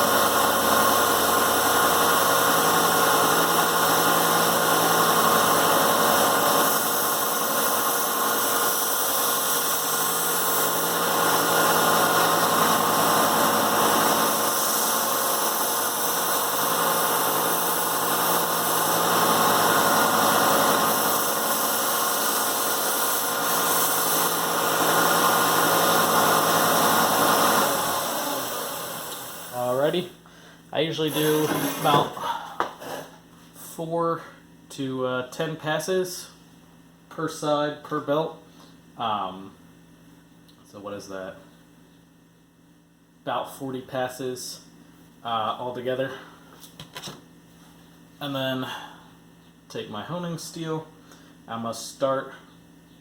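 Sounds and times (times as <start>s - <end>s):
belt sander running: 0.0s - 29.8s, 31.1s - 32.1s.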